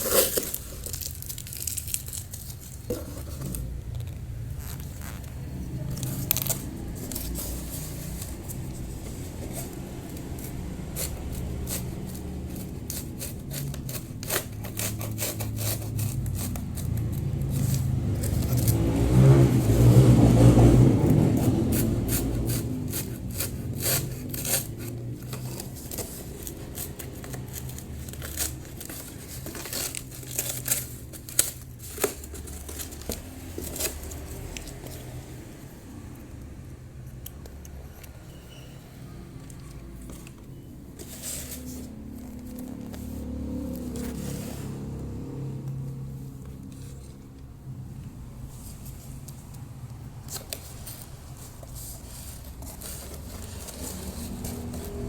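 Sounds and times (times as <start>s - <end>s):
cardboard cut and torn: 0.0s - 3.8s, 4.4s - 35.0s.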